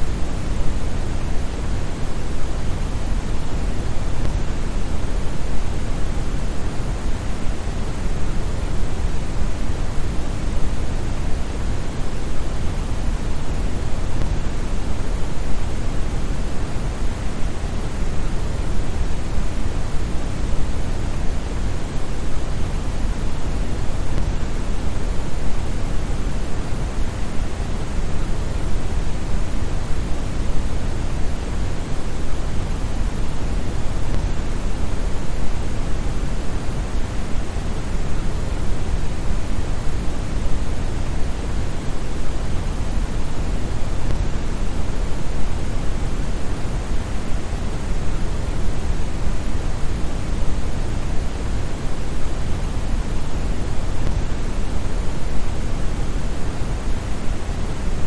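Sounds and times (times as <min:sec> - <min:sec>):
brown noise hiss: 0:00.0 - 0:58.0.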